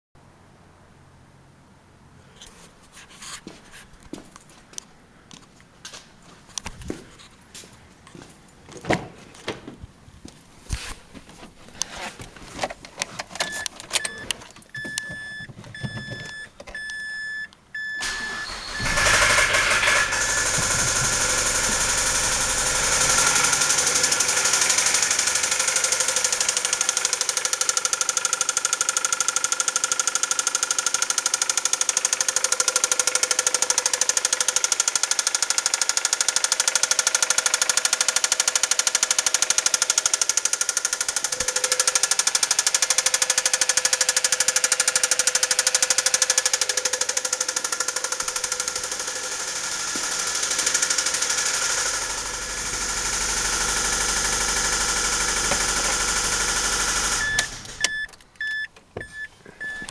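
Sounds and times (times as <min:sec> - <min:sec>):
car engine cranking and knocking: 0:12.2 - 0:17.1, 0:18.0 - 0:59.9
car warning chime beeping: 0:13.4 - 0:19.2, 0:56.6 - 0:59.9.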